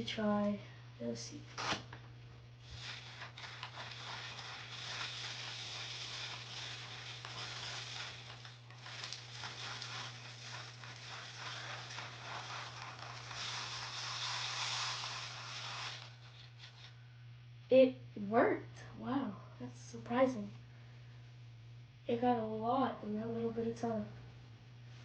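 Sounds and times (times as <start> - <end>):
beads rattling in spinner bowl: 2.6 - 16.3.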